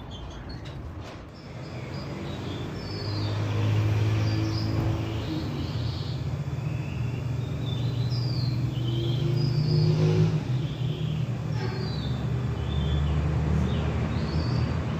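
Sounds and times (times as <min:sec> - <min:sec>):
birds chirping: 0:00.0 - 0:14.9
low motor hum: 0:00.0 - 0:14.9.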